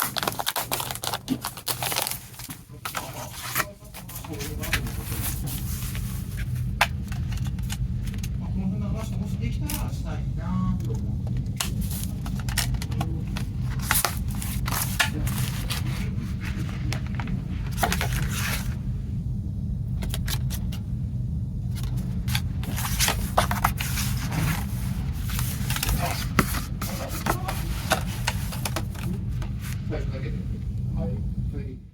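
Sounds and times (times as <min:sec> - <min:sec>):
cardboard packaging scraping: 0:00.0 - 0:07.8, 0:11.6 - 0:18.8, 0:21.8 - 0:29.8
plastic wrap crackling: 0:00.0 - 0:08.4, 0:10.8 - 0:18.8, 0:21.8 - 0:29.9
steady low hum: 0:00.0 - 0:31.9.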